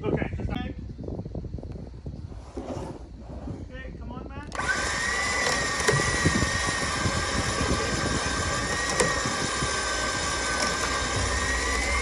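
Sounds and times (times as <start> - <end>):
motor running with whine: 4.5 - 12.0.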